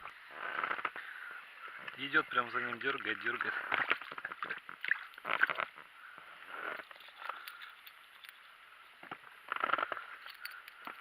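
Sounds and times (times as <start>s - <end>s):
fish splashing: 3.0s - 5.8s.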